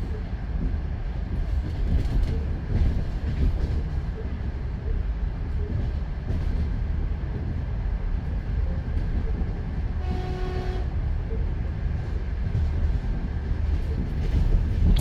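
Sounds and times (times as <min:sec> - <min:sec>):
train wheels rumbling on rails: 0:00.0 - 0:15.0
train horn blast: 0:10.0 - 0:11.0.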